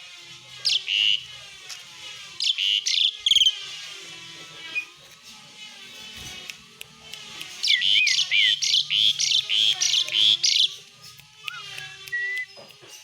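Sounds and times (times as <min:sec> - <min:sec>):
starling harsh chattering song: 0:00.6 - 0:01.4, 0:02.2 - 0:03.6, 0:04.6 - 0:13.0
faint calls of other birds: 0:07.6 - 0:10.9.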